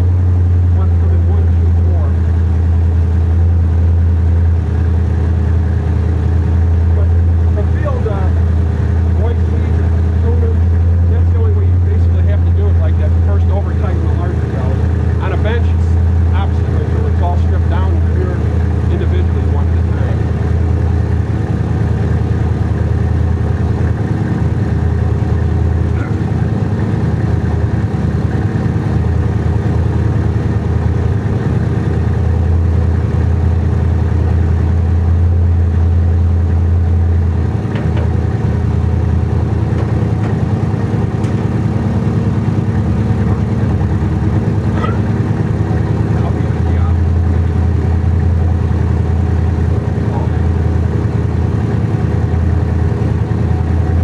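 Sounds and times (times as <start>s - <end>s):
air compressor humming: 0.0s - 54.0s.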